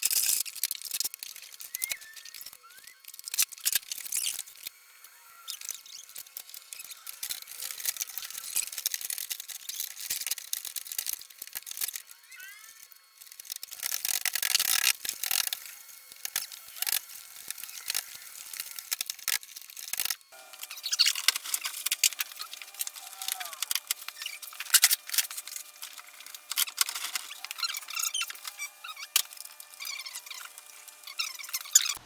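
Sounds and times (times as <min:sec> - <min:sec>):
short squeaks: 0:20.4 - 0:32.0.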